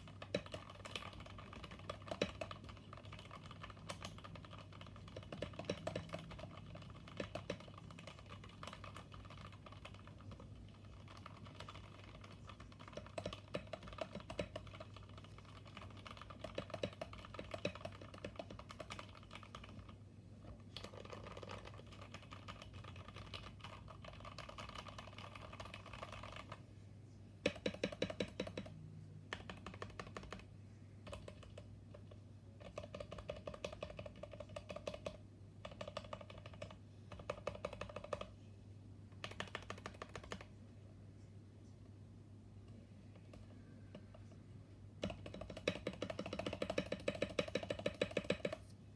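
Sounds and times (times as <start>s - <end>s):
mechanical keyboard typing: 0.0s - 20.0s, 20.6s - 26.6s, 27.4s - 38.4s, 39.1s - 40.6s, 45.0s - 48.7s.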